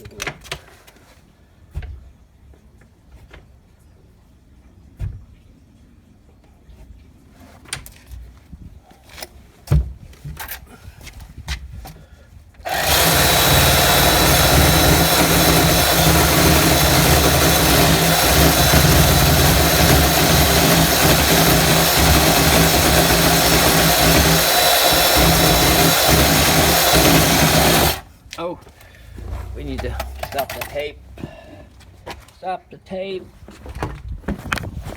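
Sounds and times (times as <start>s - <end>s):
power tool trimming wood: 12.7s - 28.1s.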